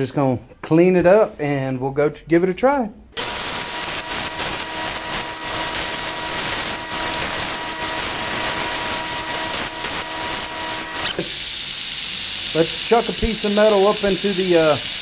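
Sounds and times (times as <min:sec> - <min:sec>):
grinder motor hum: 0:03.2 - 0:15.0
steel hissing against grinder: 0:03.2 - 0:15.0.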